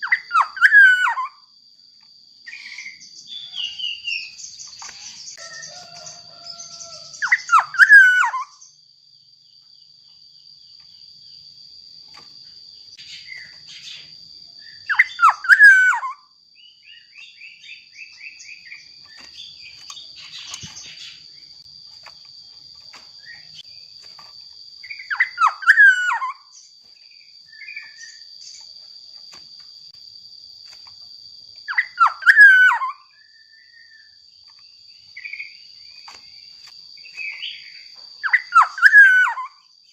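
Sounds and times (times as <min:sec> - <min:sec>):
bird singing fluting phrases: 0:00.0 - 0:01.4, 0:02.5 - 0:08.8, 0:13.0 - 0:21.5, 0:24.8 - 0:26.7, 0:31.7 - 0:34.2, 0:37.0 - 0:39.7
faint bird chirps: 0:00.0 - 0:01.5, 0:02.4 - 0:08.9, 0:09.5 - 0:29.4, 0:31.6 - 0:39.9.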